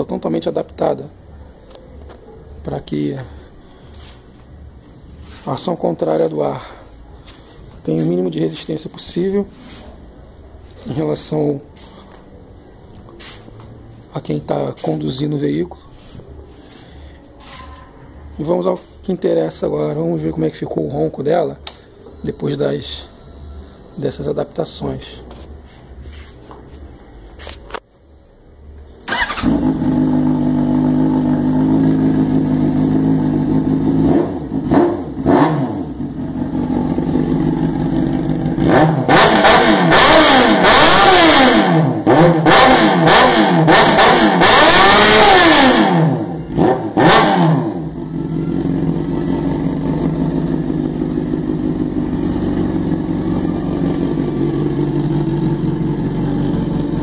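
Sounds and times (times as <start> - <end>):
motorcycle engine idling and revving: 28.7 - 57.0.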